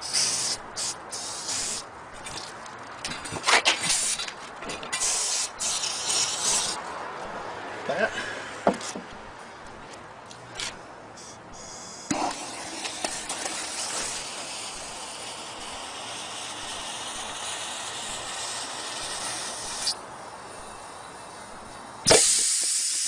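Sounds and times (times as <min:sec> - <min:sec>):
pressurised gas hissing: 0:00.0 - 0:01.9, 0:03.3 - 0:04.3, 0:04.9 - 0:06.8, 0:11.2 - 0:23.0.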